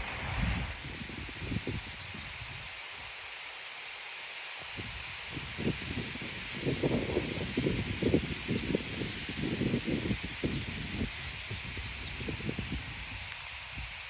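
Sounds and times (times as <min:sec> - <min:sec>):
wind buffeting microphone: 0:00.0 - 0:02.7, 0:04.7 - 0:14.0
starlings chattering: 0:04.7 - 0:13.9.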